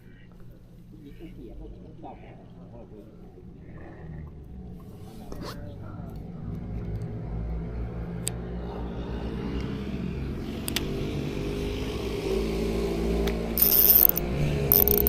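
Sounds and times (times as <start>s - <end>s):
vehicle engine running: 4.4s - 15.0s
sharp clicks: 13.2s - 15.0s.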